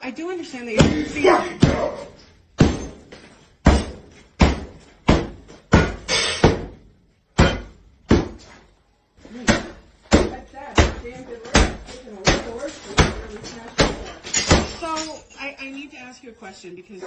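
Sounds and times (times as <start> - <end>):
sledgehammer blows: 0.8 - 8.7.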